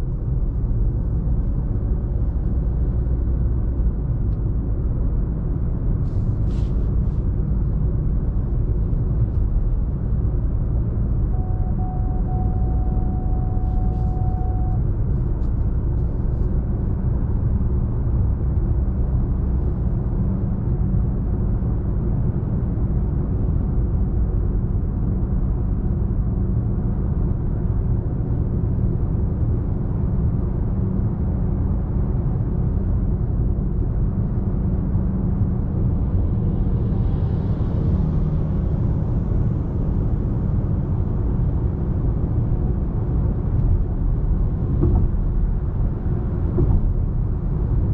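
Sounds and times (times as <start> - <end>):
diesel engine running: 0.0 - 20.4
road noise: 0.0 - 47.9.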